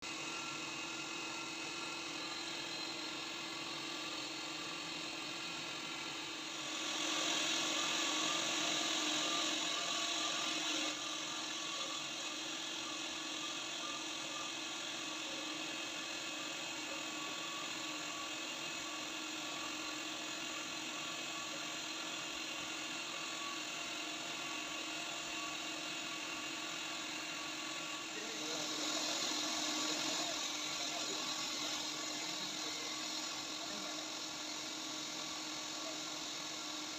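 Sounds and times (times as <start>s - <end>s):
machining centre whine: 0.0s - 36.9s.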